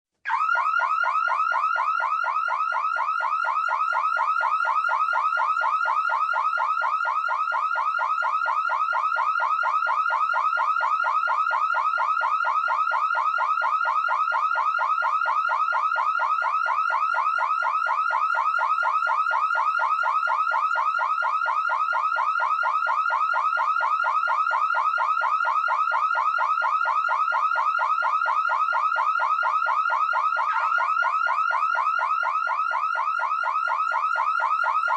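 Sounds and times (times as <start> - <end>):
security alarm chirps: 30.4 - 31.8.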